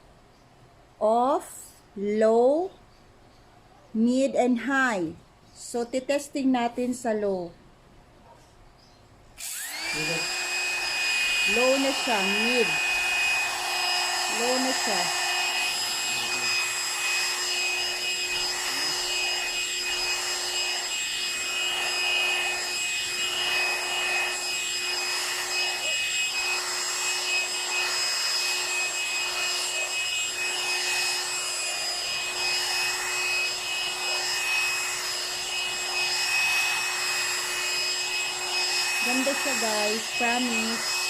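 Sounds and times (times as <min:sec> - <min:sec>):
hair dryer running: 0:09.4 - 0:41.0.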